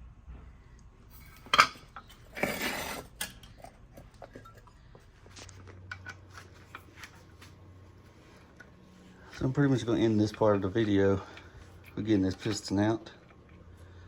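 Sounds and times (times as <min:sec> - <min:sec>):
rattling scrape: 0:02.3 - 0:03.2.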